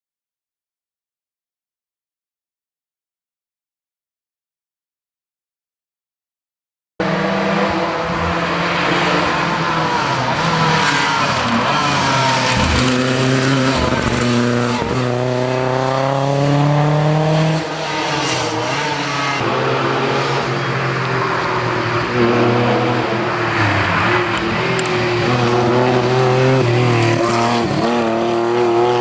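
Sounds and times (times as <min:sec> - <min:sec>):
rally car engine accelerating: 0:07.0 - 0:29.0.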